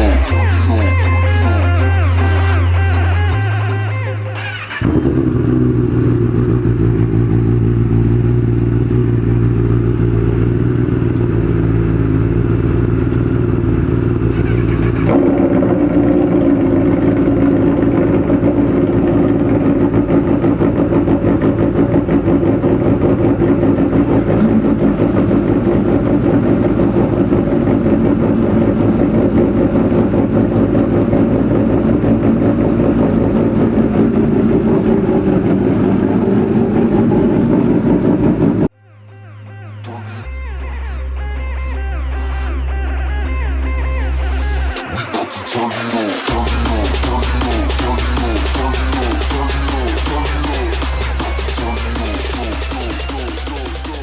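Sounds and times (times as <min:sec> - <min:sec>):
motorcycle engine idling: 0:04.7 - 0:38.7, 0:46.2 - 0:54.0.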